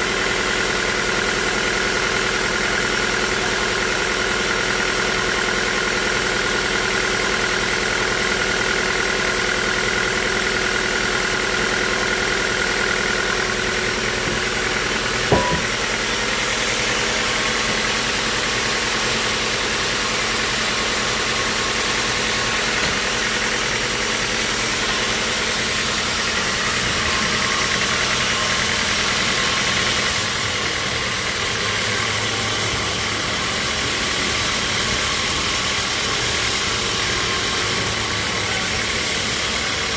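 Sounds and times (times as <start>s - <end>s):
sawmill machinery running: 0.0s - 39.9s
sharp knock: 15.3s - 15.9s.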